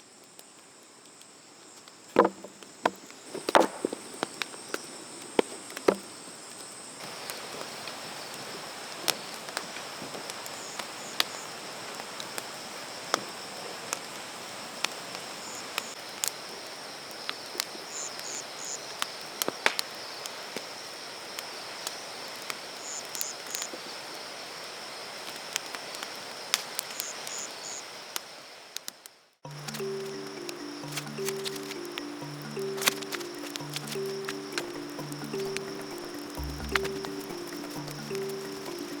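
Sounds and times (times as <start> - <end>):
insect chirps: 0.0 - 39.0
insect buzz: 1.5 - 25.2, 26.2 - 28.7, 29.5 - 39.0
sharp ticks: 29.5 - 39.0.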